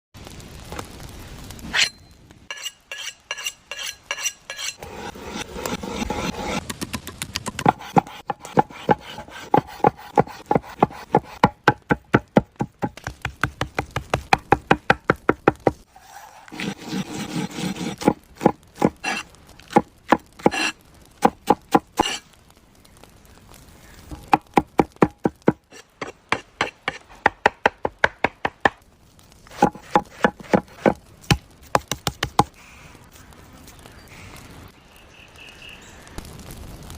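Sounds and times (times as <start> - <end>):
knife chopping on wooden board: 29.6 - 31.0.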